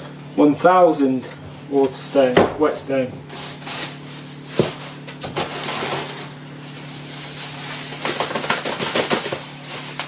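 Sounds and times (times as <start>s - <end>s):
packaging crackling rustle: 3.3s - 10.0s.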